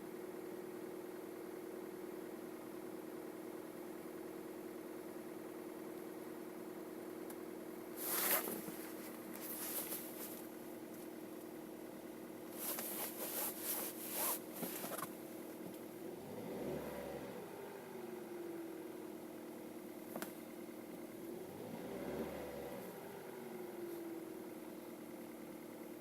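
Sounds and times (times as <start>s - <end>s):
car engine idling: 0.3s - 13.0s, 13.6s - 16.5s, 17.2s - 21.8s, 22.5s - 26.0s
rustling and scraping: 8.0s - 11.1s, 12.5s - 15.2s.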